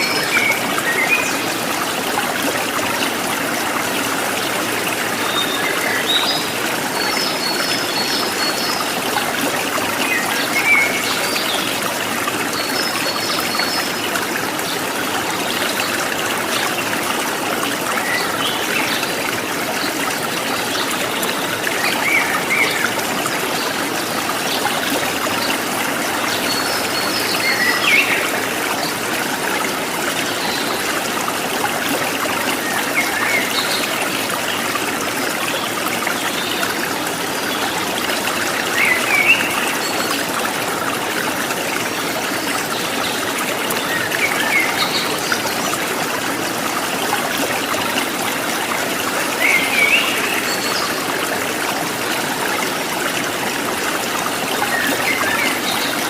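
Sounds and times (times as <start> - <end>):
stream trickling: 0.0 - 56.0.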